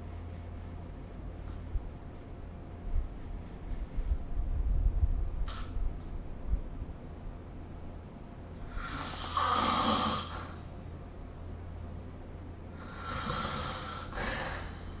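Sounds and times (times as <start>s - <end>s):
person snoring: 8.7s - 10.6s, 12.8s - 14.8s.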